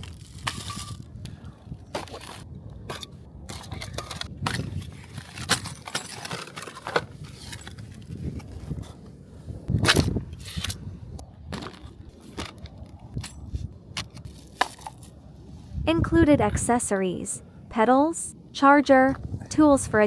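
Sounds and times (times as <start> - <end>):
packaging rustling: 4.8 - 8.6.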